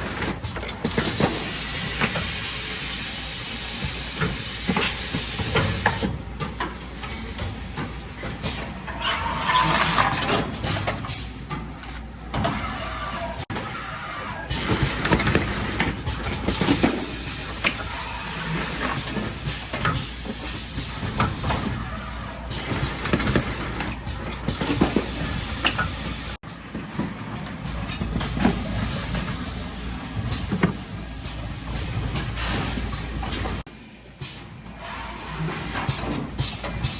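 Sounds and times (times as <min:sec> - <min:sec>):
packaging machine clattering: 0:14.5 - 0:17.9, 0:22.5 - 0:25.1.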